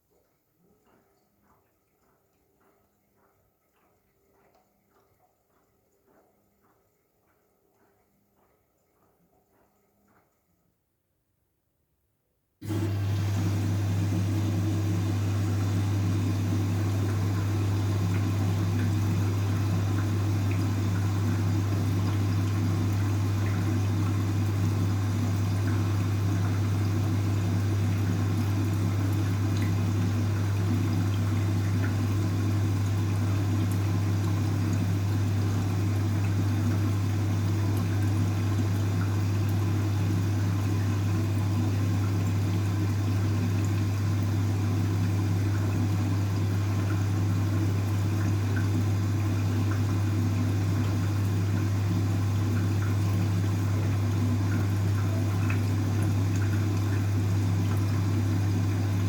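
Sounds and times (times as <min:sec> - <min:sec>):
water rushing: 0:12.6 - 0:31.9
washing machine hum: 0:12.6 - 0:59.0.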